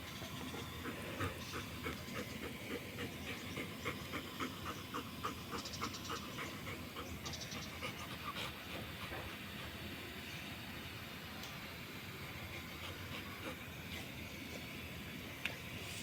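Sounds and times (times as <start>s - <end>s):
dog panting: 0.0s - 9.9s, 12.4s - 14.7s.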